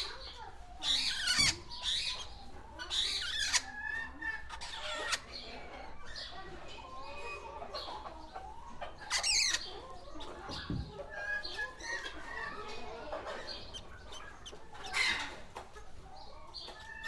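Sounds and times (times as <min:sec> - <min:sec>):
parakeets chirping: 0:00.8 - 0:03.7, 0:09.0 - 0:17.0
turkeys calling: 0:07.0 - 0:17.0.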